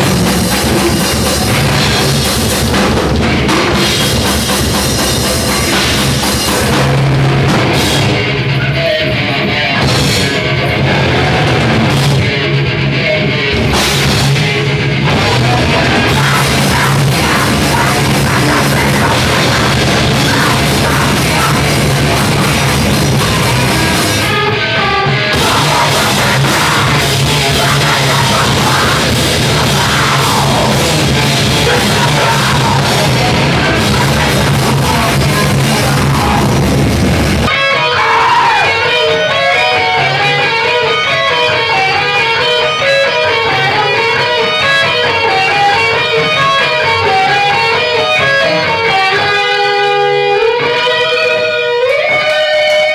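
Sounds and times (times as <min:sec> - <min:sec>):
heavy metal music: 0:00.0 - 0:52.9.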